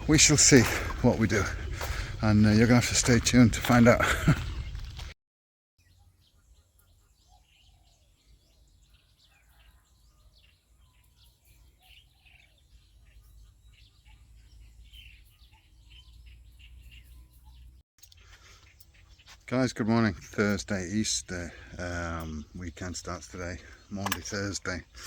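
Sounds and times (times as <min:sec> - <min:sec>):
faint birds chirping: 0:00.0 - 0:05.2, 0:05.8 - 0:25.0.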